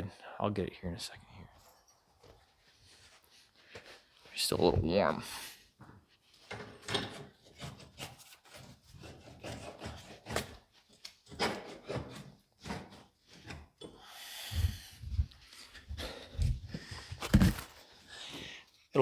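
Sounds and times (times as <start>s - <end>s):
dull thumps: 16.8s - 17.8s.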